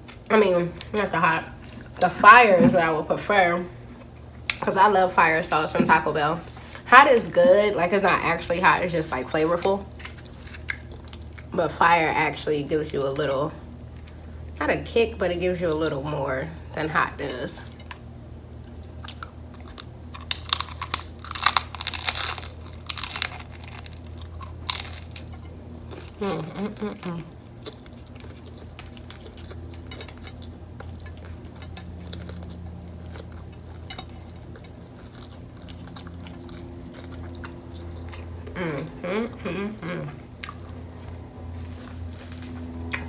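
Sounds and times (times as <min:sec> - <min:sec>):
crunchy taco shell crunching: 0:09.8 - 0:11.5, 0:17.8 - 0:38.6
quiet chewing: 0:17.7 - 0:43.0.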